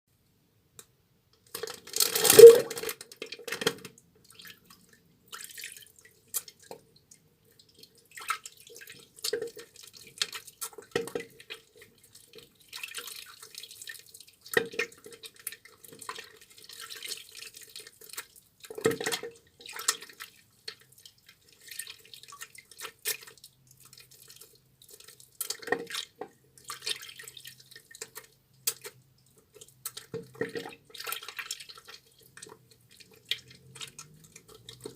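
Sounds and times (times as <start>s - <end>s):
wet soap squelching in hands: 19.6s - 34.9s.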